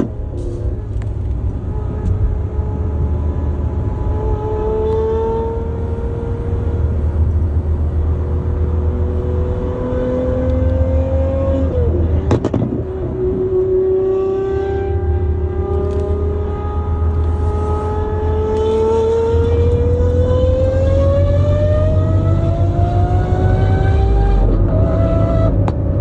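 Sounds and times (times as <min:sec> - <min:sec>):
car engine accelerating: 0:00.0 - 0:26.0
exhaust pops: 0:12.2 - 0:13.1.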